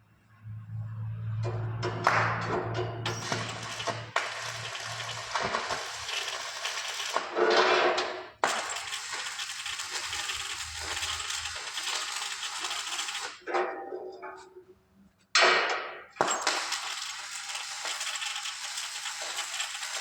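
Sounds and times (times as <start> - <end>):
arc welder crackling: 3.1 - 13.5, 16.2 - 20.0.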